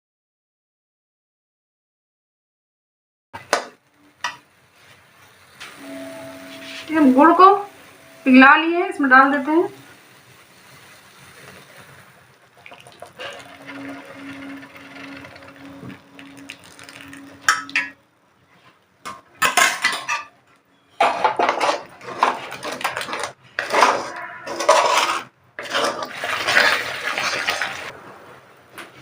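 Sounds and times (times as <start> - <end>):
low steady hum: 5.6 - 10.5, 12.6 - 20.8
metal spoon scraping a pan: 21.0 - 27.8.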